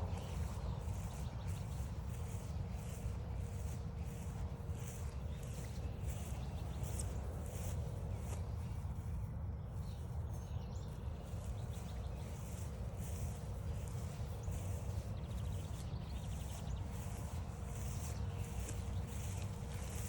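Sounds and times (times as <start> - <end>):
birds calling: 0.0 - 20.0
footsteps crunching on trail: 0.0 - 20.0.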